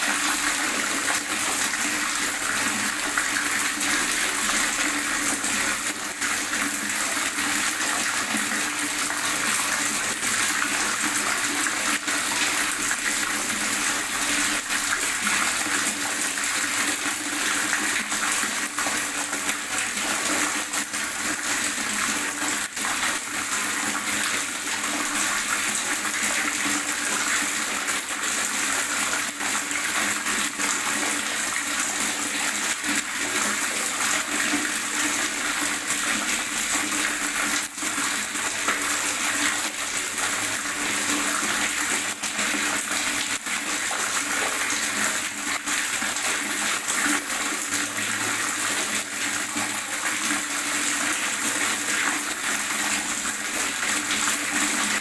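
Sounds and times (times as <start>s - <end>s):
gurgling running water: 0.0s - 55.0s.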